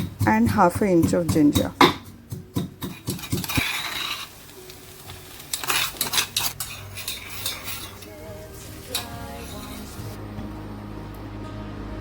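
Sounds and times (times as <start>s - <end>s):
metal spoon clinking in pan: 5.5s - 8.0s.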